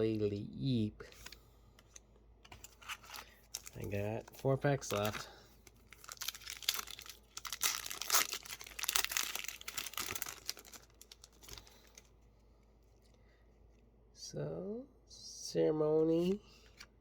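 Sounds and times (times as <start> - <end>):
foil wrapper crinkling and tearing: 2.6 - 12.1.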